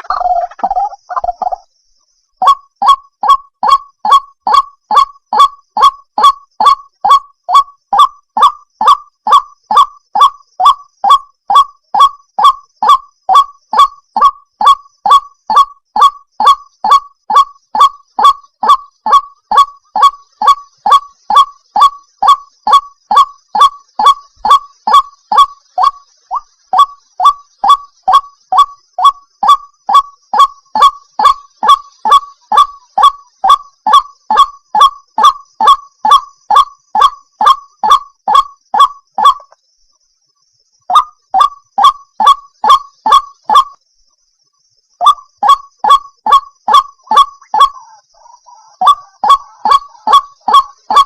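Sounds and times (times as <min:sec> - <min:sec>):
waterhen calling: 0:00.0 - 0:01.6, 0:06.6 - 0:34.9, 0:45.0 - 0:51.0.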